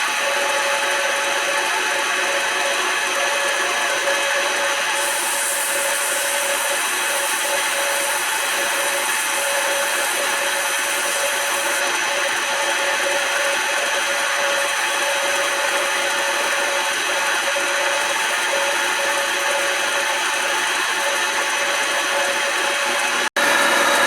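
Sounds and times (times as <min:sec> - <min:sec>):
lathe whining: 0:00.0 - 0:24.0
hiss of wood being turned: 0:04.9 - 0:11.8.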